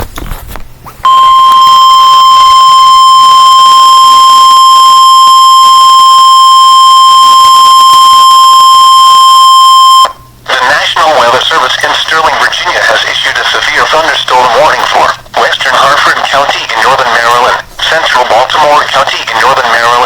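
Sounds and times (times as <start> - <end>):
emergency alert tone: 1.0 - 10.2.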